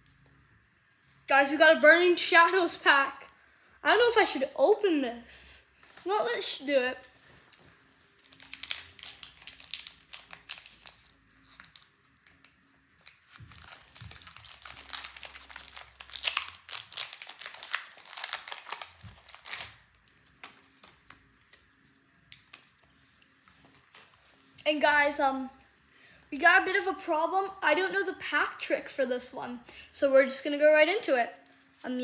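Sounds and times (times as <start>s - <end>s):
foil wrapper crinkling and tearing: 8.2s - 21.2s.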